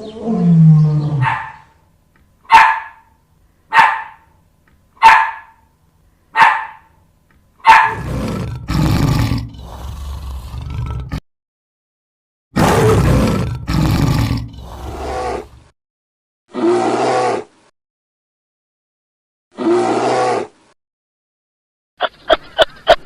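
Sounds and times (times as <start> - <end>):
dog barking: 1.2 - 1.7, 2.5 - 3.1, 3.7 - 4.3, 5.0 - 5.6, 6.4 - 6.9, 7.6 - 8.1
harsh deep animal sound: 7.9 - 11.2, 12.6 - 15.7.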